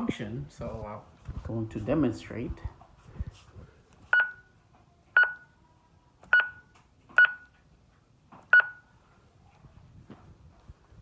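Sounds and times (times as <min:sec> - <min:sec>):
electronic key-press beeps: 0:04.1 - 0:04.5, 0:05.2 - 0:05.5, 0:06.3 - 0:07.5, 0:08.5 - 0:08.9.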